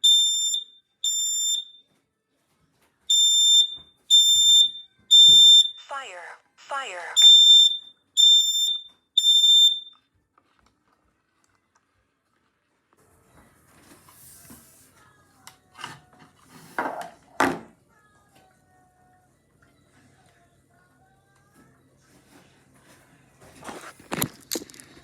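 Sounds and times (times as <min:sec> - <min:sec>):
smoke alarm beeps: 0:00.0 - 0:01.8, 0:03.1 - 0:10.0.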